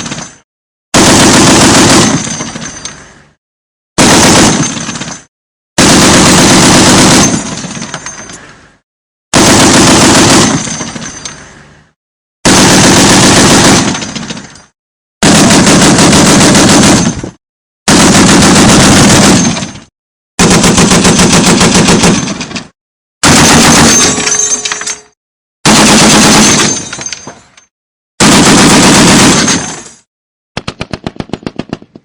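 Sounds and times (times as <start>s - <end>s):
machine gun bursts with echo: 1.0s - 2.5s, 4.0s - 5.2s, 5.8s - 7.6s, 9.4s - 10.9s, 12.4s - 14.2s, 15.2s - 17.2s, 17.9s - 19.7s, 20.4s - 22.4s, 23.2s - 24.2s, 25.7s - 26.8s, 28.2s - 29.7s, 30.6s - 32.0s.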